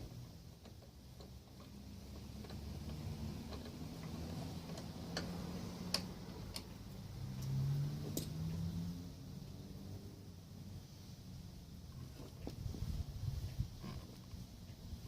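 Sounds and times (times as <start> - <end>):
metallic clicks of hand tools: 0.6 - 8.4.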